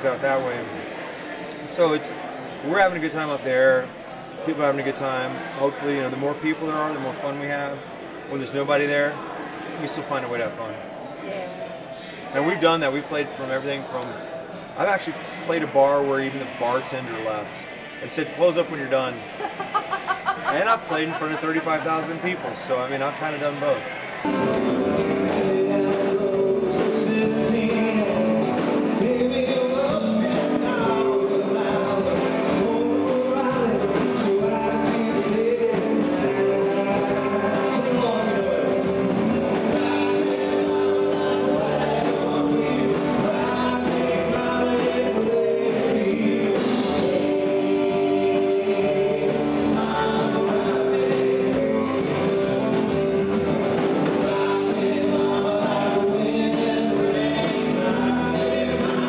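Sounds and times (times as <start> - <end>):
guitars: 11.3 - 59.0
country-rock song: 14.8 - 59.0
person singing: 25.2 - 53.5, 54.1 - 59.0.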